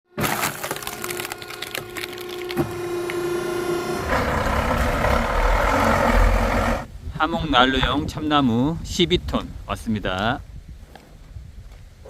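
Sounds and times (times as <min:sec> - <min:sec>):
steady hum: 0:00.1 - 0:07.0
logs knocking together: 0:00.2 - 0:02.8
loud rushing noise: 0:02.6 - 0:07.0.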